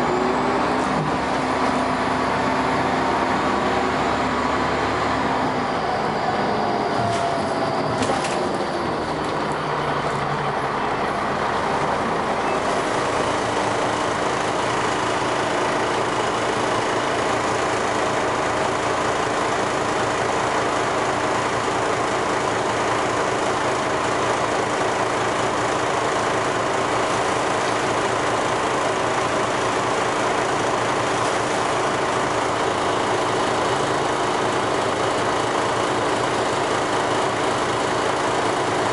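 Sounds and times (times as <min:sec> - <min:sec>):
bus engine running: 0:00.0 - 0:38.9.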